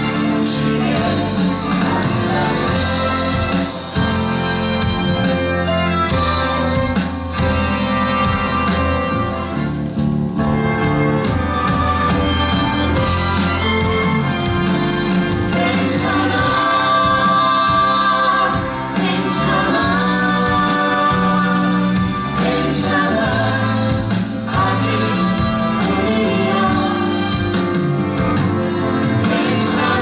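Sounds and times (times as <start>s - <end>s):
cast singing together: 0.0s - 4.8s, 11.1s - 27.8s, 28.8s - 30.0s
band accompaniment: 0.0s - 30.0s.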